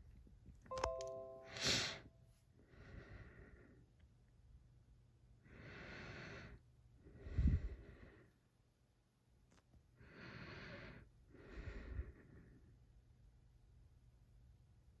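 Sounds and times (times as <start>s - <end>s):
person breathing close to microphone: 5.5s - 8.4s, 10.0s - 12.7s.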